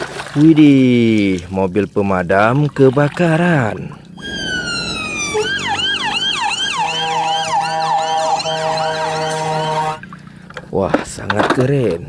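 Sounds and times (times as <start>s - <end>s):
electronic siren wail and yelp: 4.2s - 10.0s
steady multi-note tone: 4.2s - 10.1s.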